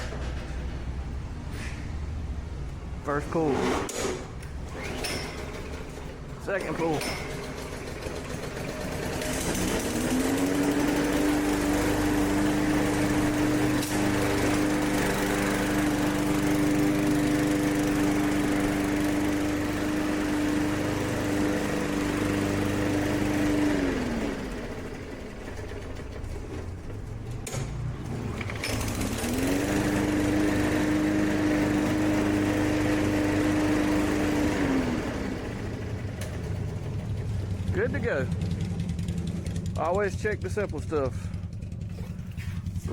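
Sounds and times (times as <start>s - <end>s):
push mower engine running: 2.6s - 42.9s.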